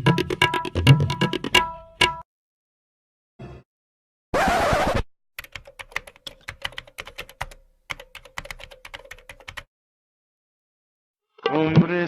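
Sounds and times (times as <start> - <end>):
computer keyboard typing: 5.4 - 9.7.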